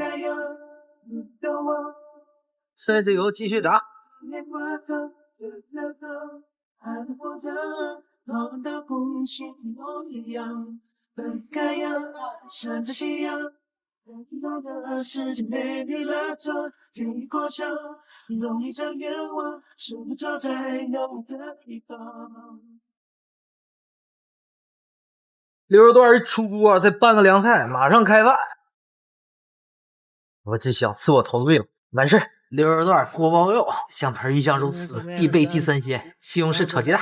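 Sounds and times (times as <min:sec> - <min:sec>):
woman singing unaccompanied: 0:34.6 - 0:35.6.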